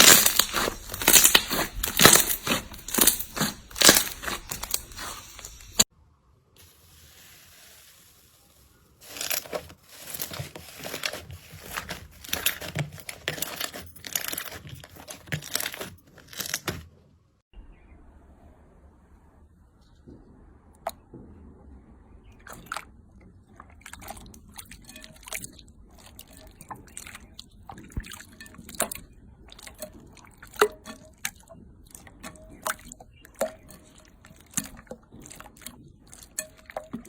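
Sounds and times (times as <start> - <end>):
slime crackling and popping: 0.0 - 5.8.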